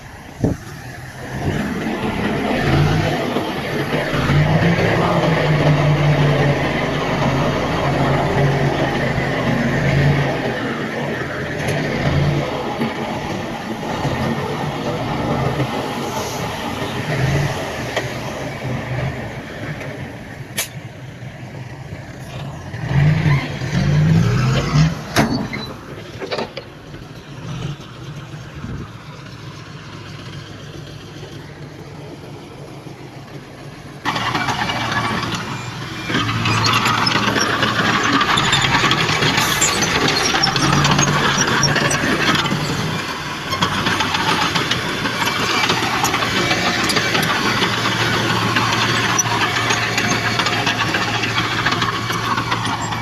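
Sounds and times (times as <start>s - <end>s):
heavy machinery diesel engines: 0.0s - 53.0s
sharp clicks and knocks: 24.5s - 27.7s.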